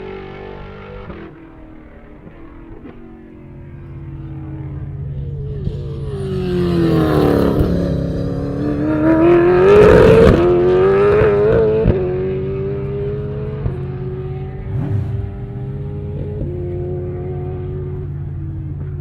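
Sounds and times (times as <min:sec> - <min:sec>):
racing car engine revving: 0:04.2 - 0:18.9.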